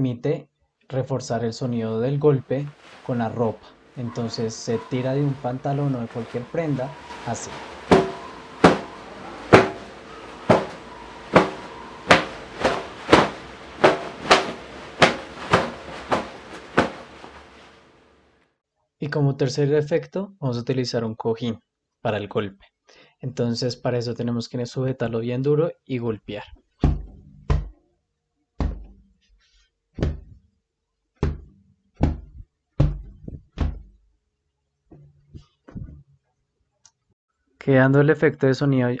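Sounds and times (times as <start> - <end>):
dull thuds on a cushion: 2.5 - 17.8
fabric snapping taut: 2.6 - 17.8.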